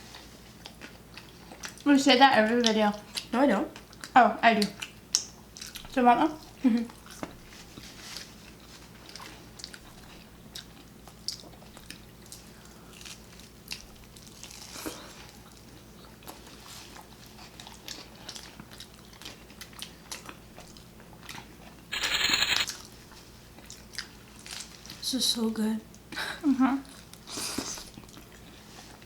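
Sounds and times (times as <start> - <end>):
people chewing and crunching: 0.1 - 1.8, 6.8 - 21.4, 27.0 - 29.0.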